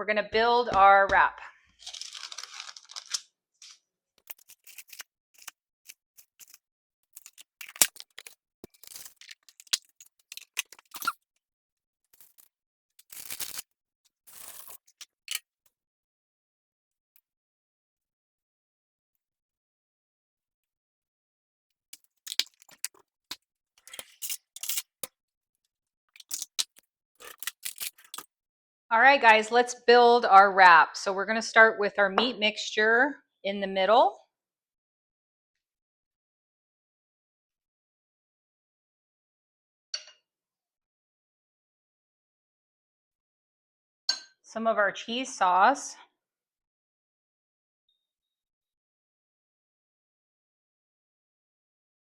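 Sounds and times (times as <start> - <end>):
kitchen items clicking and rustling: 1.8 - 5.5.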